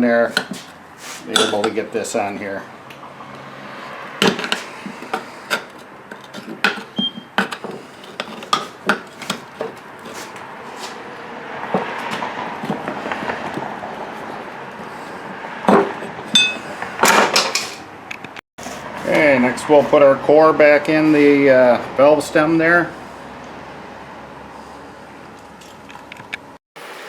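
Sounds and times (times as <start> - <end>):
tire rubbing and scraping: 0.0 - 26.6
metallic clinks and knocks: 15.7 - 17.8.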